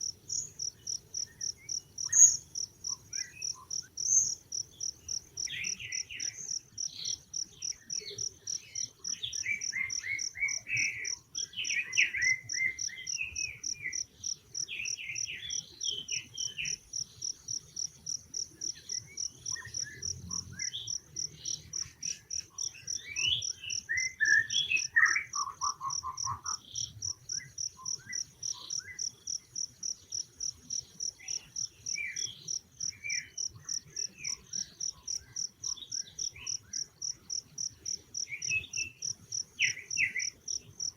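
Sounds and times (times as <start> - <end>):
short chirping calls: 18.6 - 40.9.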